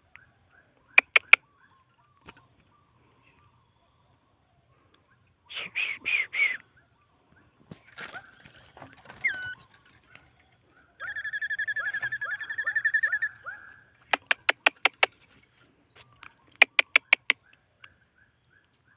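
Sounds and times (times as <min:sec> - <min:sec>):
small bird calling and trilling: 0:00.0 - 0:18.9
bird clicking notes: 0:01.0 - 0:01.4, 0:14.0 - 0:15.3, 0:16.2 - 0:17.5.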